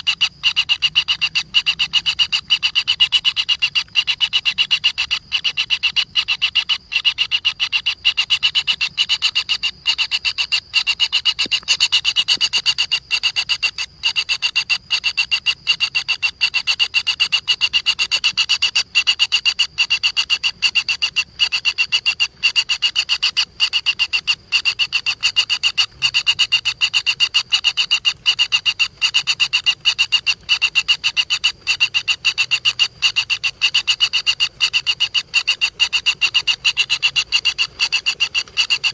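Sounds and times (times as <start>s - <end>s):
animal pulsing trill: 24.0s - 38.9s.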